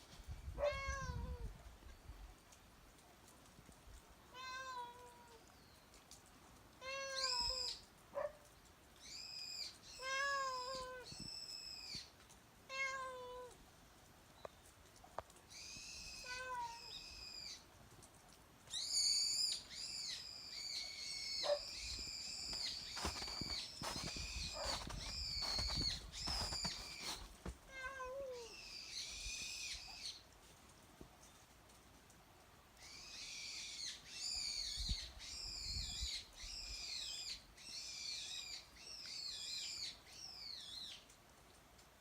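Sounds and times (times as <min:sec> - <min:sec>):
cat meowing: 0:00.6 - 0:01.5, 0:27.7 - 0:28.5.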